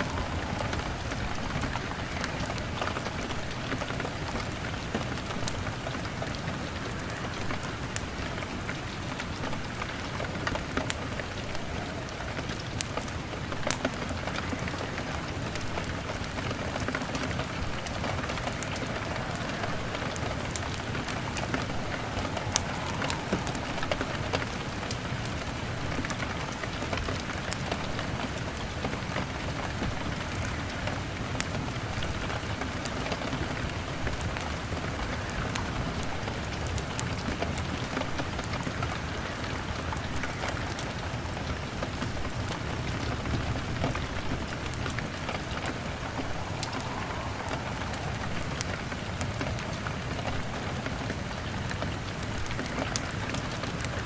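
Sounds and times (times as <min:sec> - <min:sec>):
log fire crackling: 0:00.0 - 0:54.0
rain on a window: 0:00.0 - 0:54.0.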